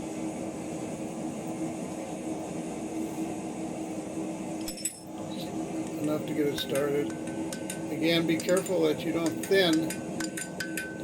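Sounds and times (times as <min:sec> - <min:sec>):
constant low hum: 0:00.0 - 0:11.0.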